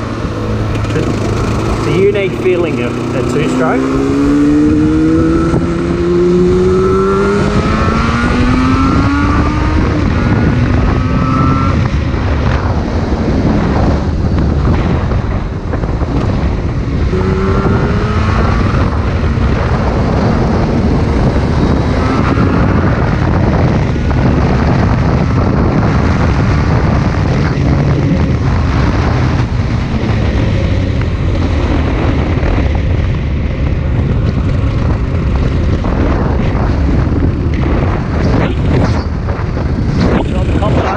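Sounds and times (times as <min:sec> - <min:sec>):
motorcycle engine revving: 0:00.0 - 0:40.9
wind on microphone: 0:00.0 - 0:40.9.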